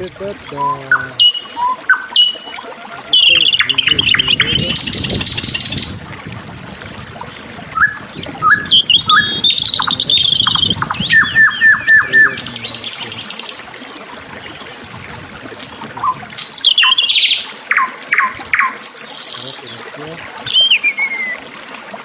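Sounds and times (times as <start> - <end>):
songbird singing: 0.0 - 6.2, 6.8 - 13.6, 14.3 - 22.0.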